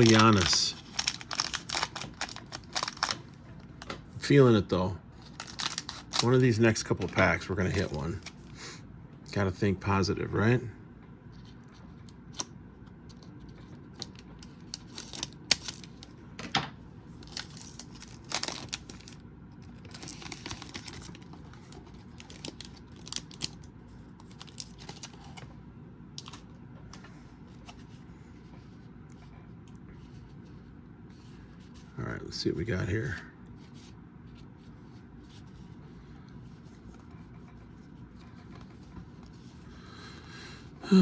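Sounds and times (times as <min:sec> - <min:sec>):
foil pack tearing: 0:00.0 - 0:03.2, 0:05.3 - 0:06.5, 0:17.2 - 0:19.2, 0:19.8 - 0:23.6
cards being handled: 0:00.0 - 0:04.6, 0:05.2 - 0:08.6, 0:11.4 - 0:16.2, 0:17.2 - 0:25.5.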